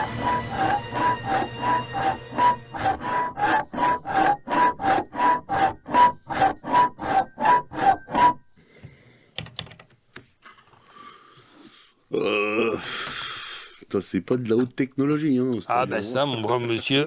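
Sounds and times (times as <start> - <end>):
foley prop whirring strokes: 0.0 - 8.4.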